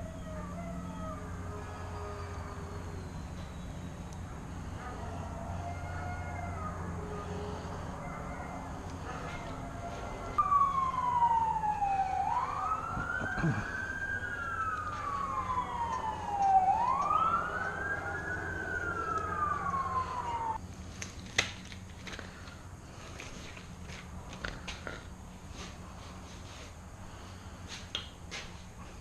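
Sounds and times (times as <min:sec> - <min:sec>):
siren wailing: 0:00.0 - 0:20.6
low hum: 0:00.0 - 0:27.6.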